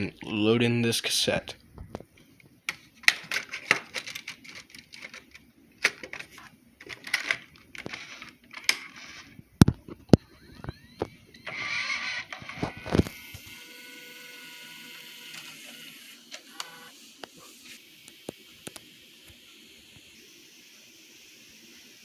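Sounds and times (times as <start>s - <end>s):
steady hiss: 0.0s - 10.1s, 13.0s - 22.0s
plastic cassette clicks and knocks: 3.0s - 8.0s
mechanical whir and clatter: 10.0s - 20.2s.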